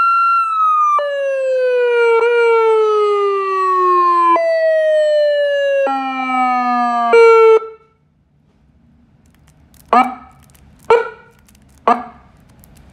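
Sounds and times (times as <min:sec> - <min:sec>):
two-tone police siren: 0:00.0 - 0:08.0.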